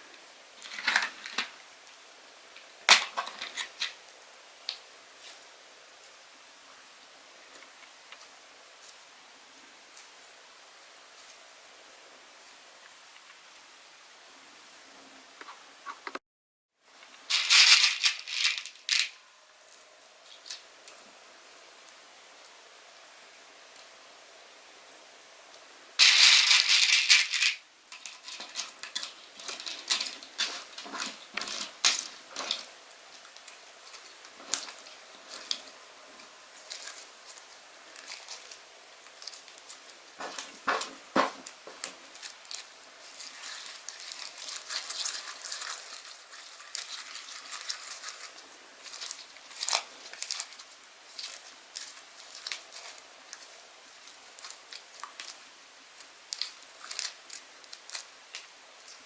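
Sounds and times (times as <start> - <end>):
noisy rustling burst: 16.9 - 20.7, 25.9 - 59.0.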